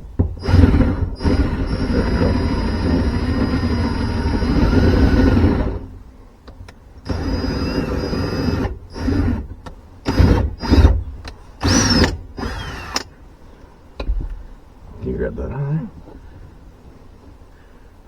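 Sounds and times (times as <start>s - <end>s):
cordless drill running: 0.4s - 5.9s, 7.1s - 11.0s, 11.6s - 13.0s.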